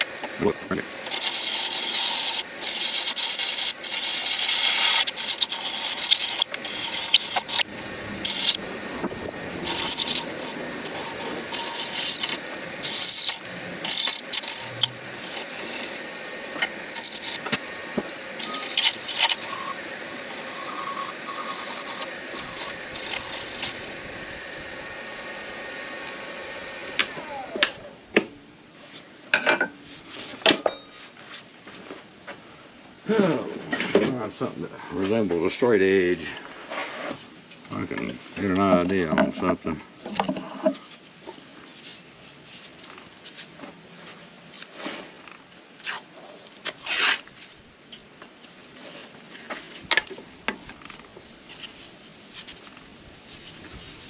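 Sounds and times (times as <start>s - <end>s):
lathe spinning: 0.0s - 27.7s
turning tool scraping: 1.0s - 17.6s, 18.4s - 24.0s, 46.8s - 47.3s.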